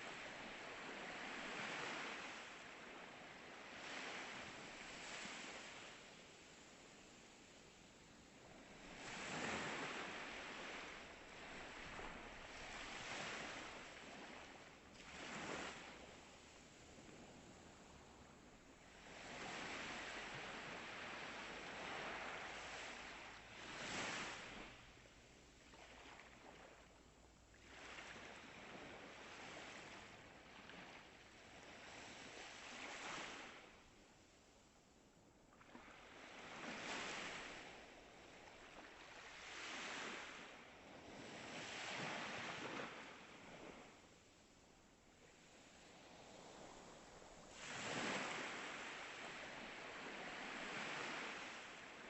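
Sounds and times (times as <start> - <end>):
ocean waves washing in: 45.4 - 52.0.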